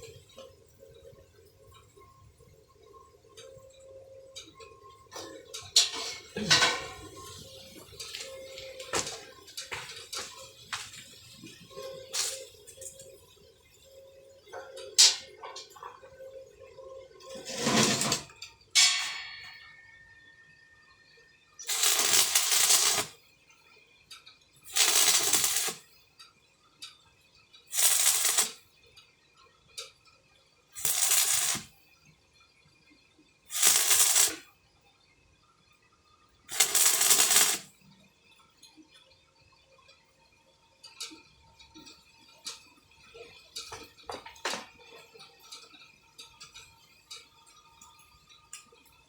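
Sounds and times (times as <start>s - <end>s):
welding arc crackling: 7.4s - 13.1s, 21.6s - 23.2s, 24.7s - 25.9s, 27.7s - 28.6s, 30.8s - 31.8s, 33.5s - 34.5s, 36.5s - 37.7s
metal clinking and ringing: 17.2s - 20.4s.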